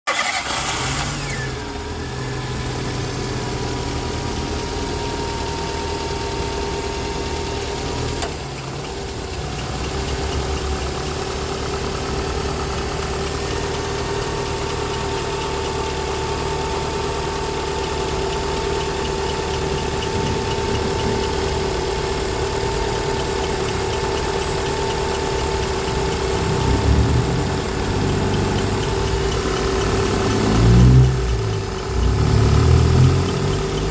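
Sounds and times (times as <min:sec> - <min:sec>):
car engine idling: 0:00.1 - 0:33.9
drive belt whining chirp: 0:08.3 - 0:33.9.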